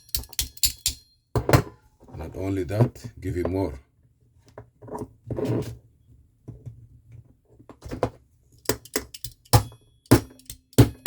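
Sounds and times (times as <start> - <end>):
sharp metal taps: 0.0 - 1.1, 8.6 - 11.0.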